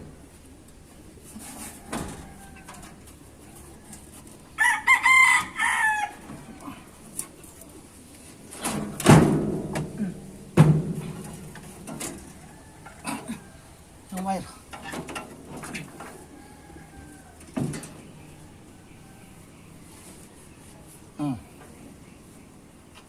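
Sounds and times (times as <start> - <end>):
rooster crowing: 1.6 - 6.9, 12.1 - 14.0, 15.8 - 19.5
loud knocks: 9.0 - 11.3.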